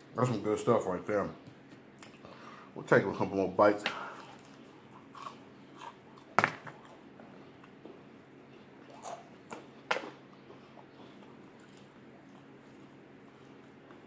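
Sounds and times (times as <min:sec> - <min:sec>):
person chewing: 0:04.1 - 0:07.8, 0:08.8 - 0:14.0.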